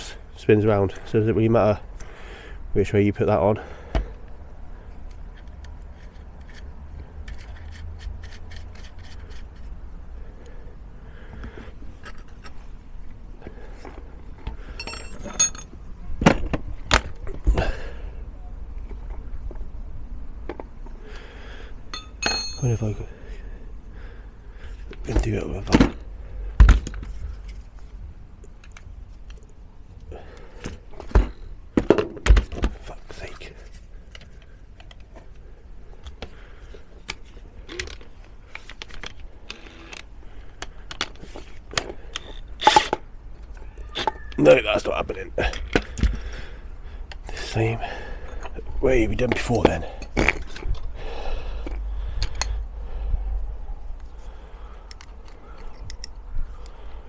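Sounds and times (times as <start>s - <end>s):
metal tools clinking: 14.8s - 15.8s, 21.9s - 23.0s, 39.5s - 40.0s.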